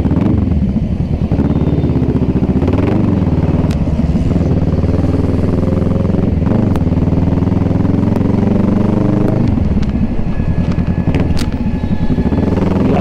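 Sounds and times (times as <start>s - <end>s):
motorcycle engine accelerating: 0.0s - 13.0s.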